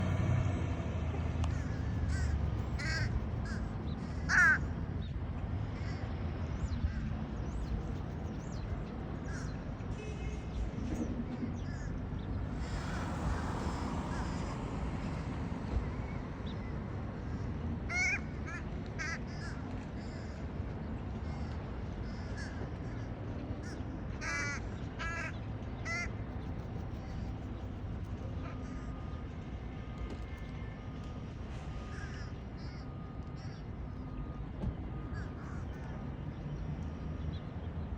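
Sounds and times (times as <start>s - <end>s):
steady low rumble: 0.0s - 4.3s
bird calling: 1.4s - 4.7s.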